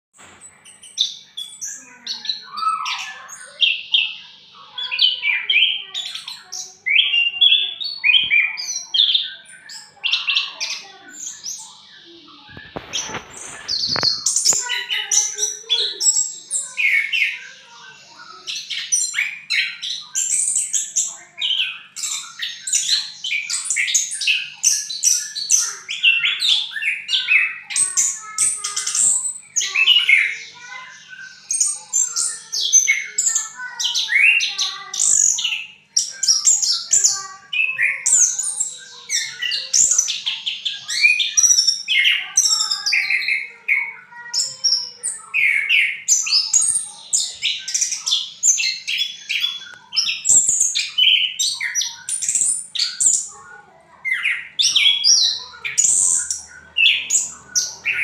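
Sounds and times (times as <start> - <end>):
noisy rustle: 12.5 - 14.6.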